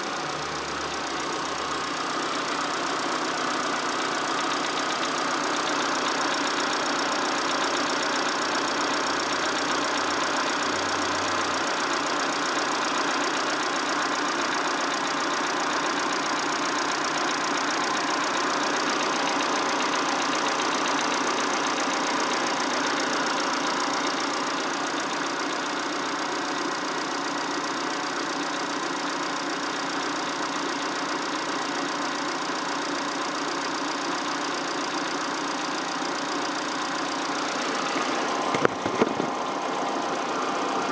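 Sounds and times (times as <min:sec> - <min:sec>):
engine knocking: 0:00.0 - 0:40.9
petrol engine running: 0:34.6 - 0:40.9.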